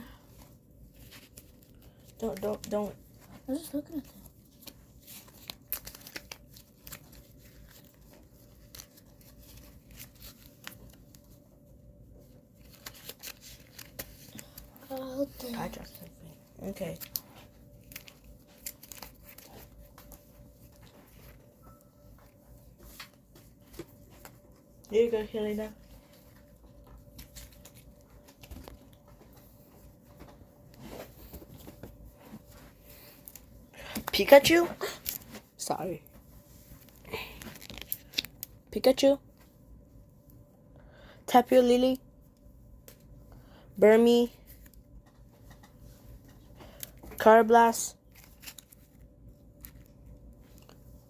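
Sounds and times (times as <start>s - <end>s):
faint steady hum: 0.0s - 51.0s
packaging crinkling: 4.1s - 11.3s, 12.5s - 16.0s, 16.7s - 21.3s, 36.8s - 38.6s.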